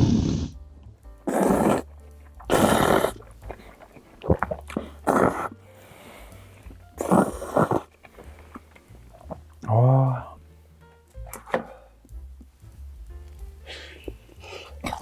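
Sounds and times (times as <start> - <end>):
person slurping noodles: 0.0 - 0.6, 1.3 - 5.6, 7.0 - 7.9
wet chewing with smacks: 1.3 - 5.6.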